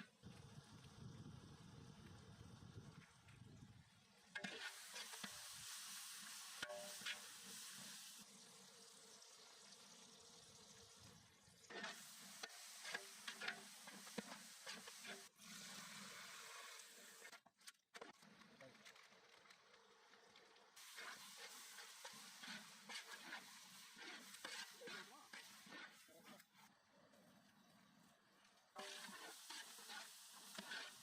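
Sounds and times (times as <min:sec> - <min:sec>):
food sizzling in oil: 0:04.1 - 0:17.3, 0:20.8 - 0:26.0, 0:28.8 - 0:31.0.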